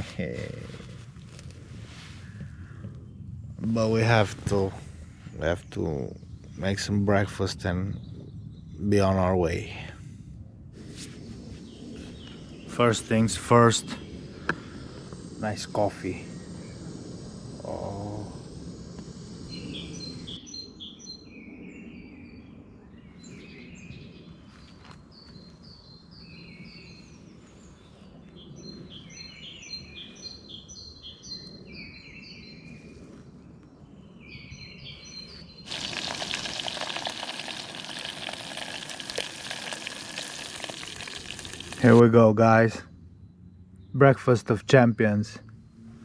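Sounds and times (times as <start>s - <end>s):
songbirds chirping: 0.0s - 10.0s, 11.0s - 46.0s
food sizzling in a frying pan: 35.7s - 42.0s.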